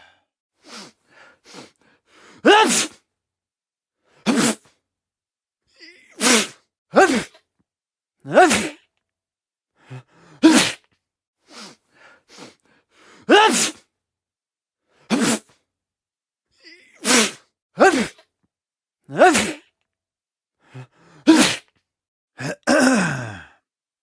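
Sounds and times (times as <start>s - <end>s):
person sneezing: 2.4s - 3.0s, 4.2s - 4.8s, 5.8s - 7.4s, 8.3s - 8.9s, 10.4s - 10.9s, 13.3s - 13.9s, 15.1s - 15.6s, 16.6s - 18.3s, 19.1s - 19.7s, 21.2s - 21.8s, 22.4s - 23.5s.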